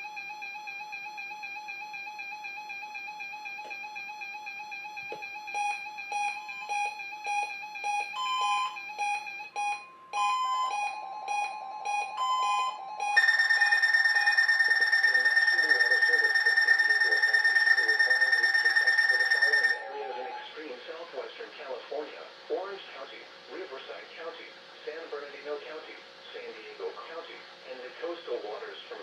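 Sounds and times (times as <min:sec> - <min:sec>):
loud high-pitched alarm: 0:00.0 - 0:20.6
rapid radio alarm beeps: 0:00.0 - 0:20.6
second radio alarm beeps: 0:00.0 - 0:20.6.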